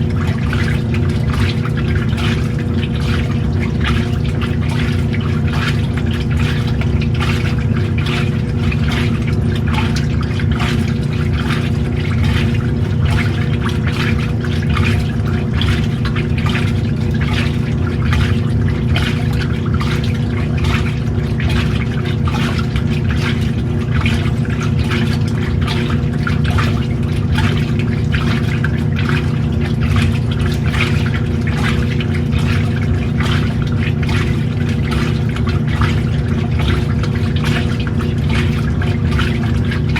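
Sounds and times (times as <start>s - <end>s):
washing machine motor hum: 0.0s - 39.9s
water sloshing and splashing: 0.0s - 39.9s.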